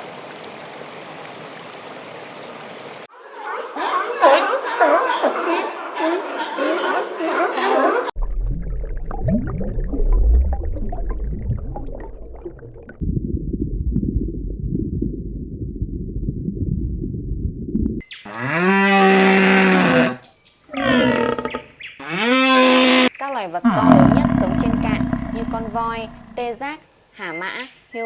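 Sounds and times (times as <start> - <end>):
drawn-out animal call: 18.3 - 23.1, 23.7 - 26.5
animal low rumbling: 18.4 - 23.1, 23.7 - 26.4.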